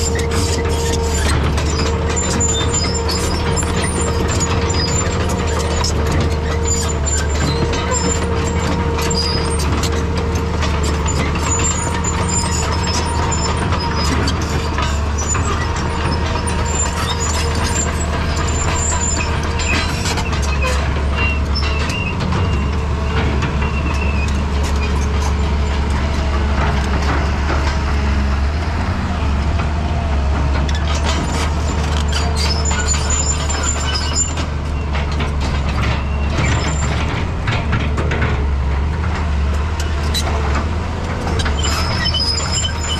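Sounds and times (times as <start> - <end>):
diesel engine running: 0.0 - 42.9
metallic clanks and knocks: 29.6 - 42.9.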